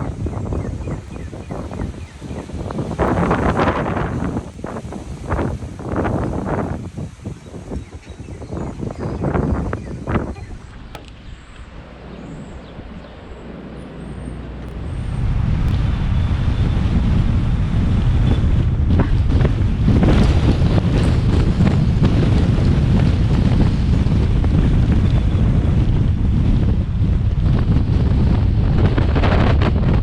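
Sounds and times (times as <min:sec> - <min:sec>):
strong wind buffeting microphone: 0:00.0 - 0:30.0
faint bird chirps: 0:07.4 - 0:14.6.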